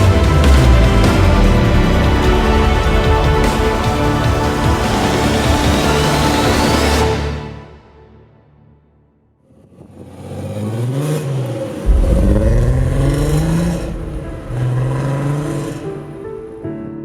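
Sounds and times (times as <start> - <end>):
car engine revving: 9.4 - 16.6
heavy low rumble: 11.8 - 16.7.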